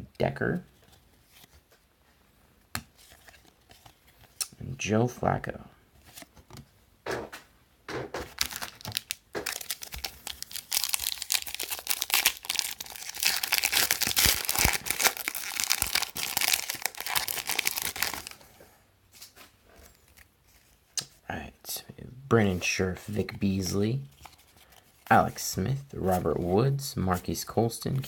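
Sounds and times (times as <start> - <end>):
wrapper crinkling and tearing: 8.3 - 18.4.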